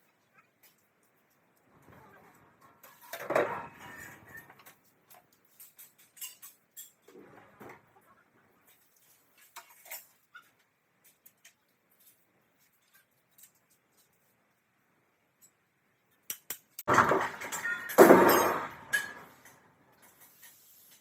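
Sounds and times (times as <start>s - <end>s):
metal tools clinking and scraping: 2.2s - 7.2s, 9.2s - 10.5s, 16.9s - 21.0s.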